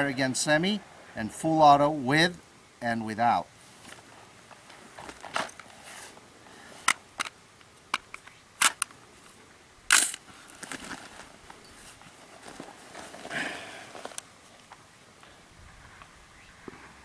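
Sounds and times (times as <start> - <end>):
rustling: 3.6 - 17.0
handling clicks and knocks: 6.8 - 9.0.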